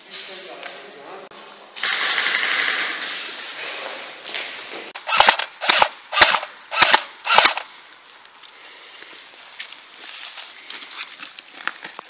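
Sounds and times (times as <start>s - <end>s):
airsoft gun single shots: 5.0s - 7.6s.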